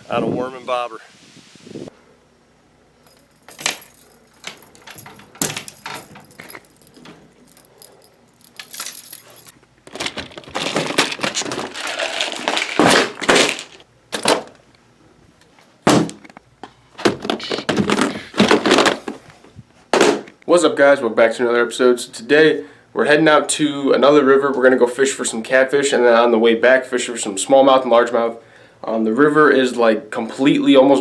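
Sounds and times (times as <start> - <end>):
handling clicks and knocks: 3.0 - 14.6
rustling and clattering: 3.0 - 14.6, 17.0 - 20.1.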